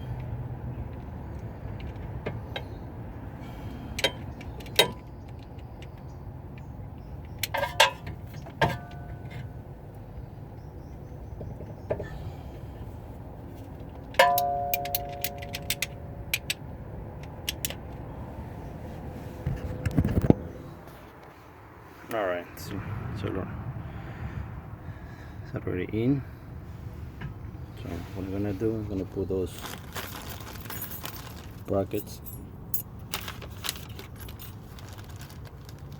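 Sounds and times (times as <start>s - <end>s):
metal tools clicking and knocking: 14.0s - 16.6s.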